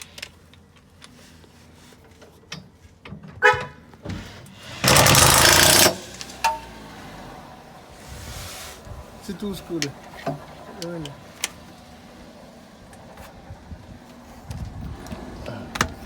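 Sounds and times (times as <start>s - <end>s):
power tool burst: 4.6s - 6.4s
tools clicking and knocking: 4.8s - 6.6s.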